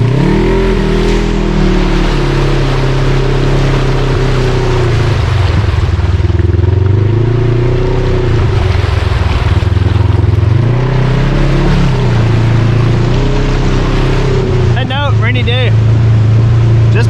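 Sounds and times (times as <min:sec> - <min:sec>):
vehicle engine revving: 0:00.0 - 0:17.0.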